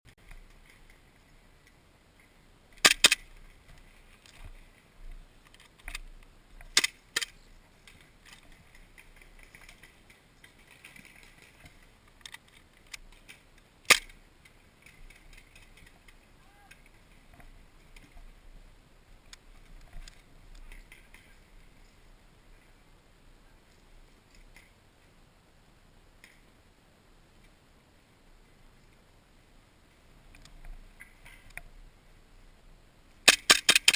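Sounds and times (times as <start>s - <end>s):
faint clicks and rustling: 0.1s - 25.3s, 26.0s - 26.7s, 29.8s - 33.9s
airsoft gun shots: 33.3s - 33.9s.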